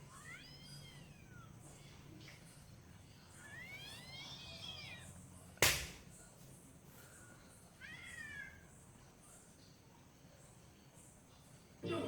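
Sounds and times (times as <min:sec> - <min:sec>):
cat meowing: 0:00.0 - 0:01.6, 0:03.4 - 0:05.1
loud sharp knock: 0:05.6 - 0:06.0.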